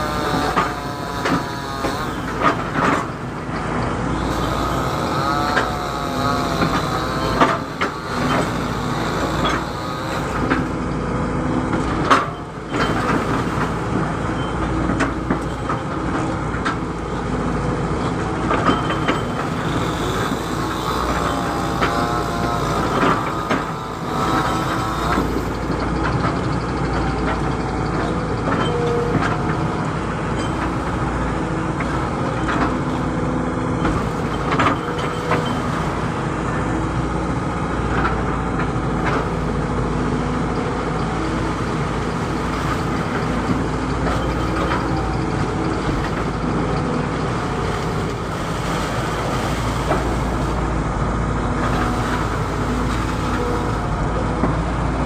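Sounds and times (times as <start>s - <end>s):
whining tones: 0.0s - 13.7s, 18.6s - 31.3s
excavator diesel engine running: 0.0s - 55.0s.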